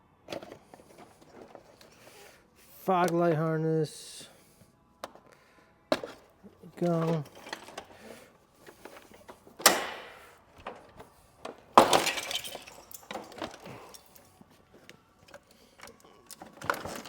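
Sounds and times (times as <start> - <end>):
hard pieces breaking and clattering: 11.4 - 14.2.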